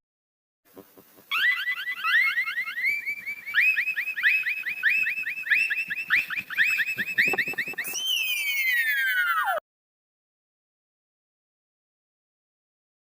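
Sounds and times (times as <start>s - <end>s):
electronic siren chirping: 4.4s - 8.6s.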